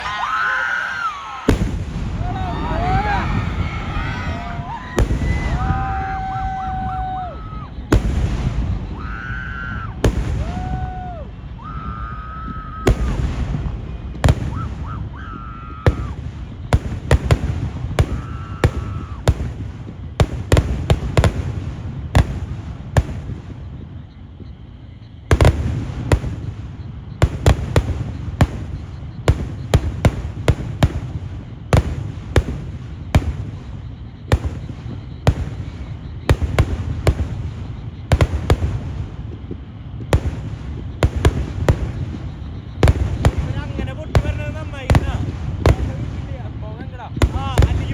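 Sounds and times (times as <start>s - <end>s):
shrill wavering whistles: 0.0s - 13.2s, 14.3s - 16.3s, 18.1s - 19.3s
fireworks bangs: 0.0s - 47.9s.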